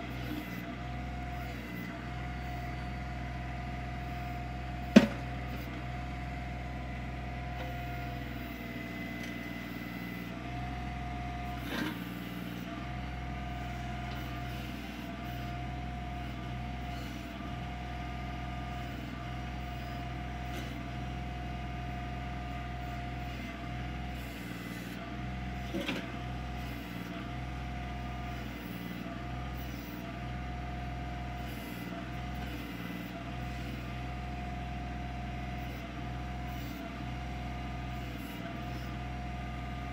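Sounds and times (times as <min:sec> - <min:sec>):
diesel tractor engine running: 0:00.0 - 0:39.9
backhoe clunk: 0:04.8 - 0:06.0, 0:11.5 - 0:12.5, 0:25.6 - 0:27.1.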